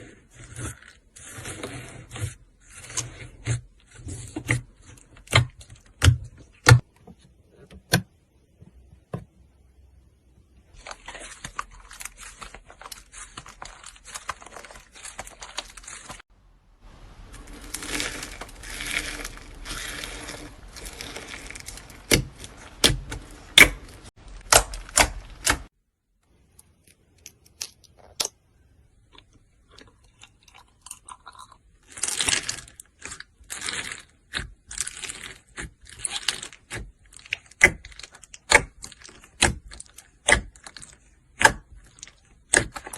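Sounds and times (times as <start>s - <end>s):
slime crackling and tearing: 10.8s - 16.2s, 17.0s - 25.7s, 31.8s - 42.9s.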